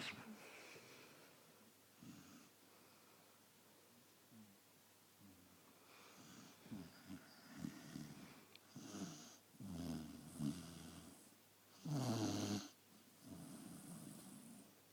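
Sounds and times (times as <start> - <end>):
small pet snoring: 6.1 - 14.7.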